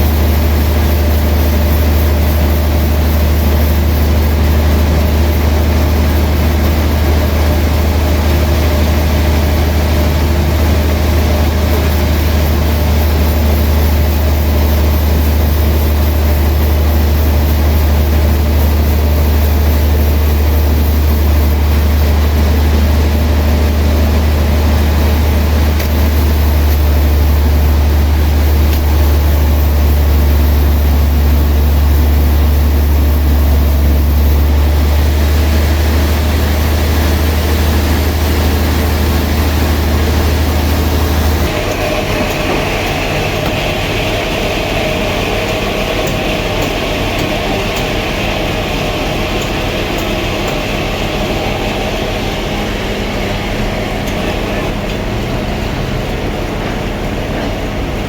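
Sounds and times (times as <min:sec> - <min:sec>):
sawmill machinery humming: 0:00.0 - 0:58.0.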